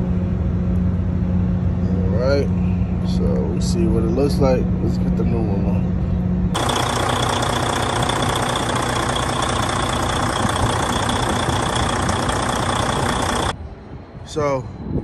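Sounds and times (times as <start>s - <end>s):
diesel engine idling: 6.6s - 13.6s.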